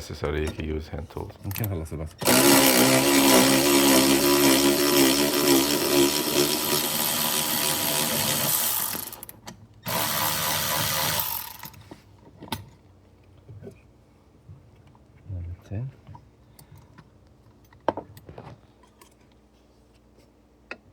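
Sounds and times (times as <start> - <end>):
cordless power tool whirring: 2.2 - 11.8.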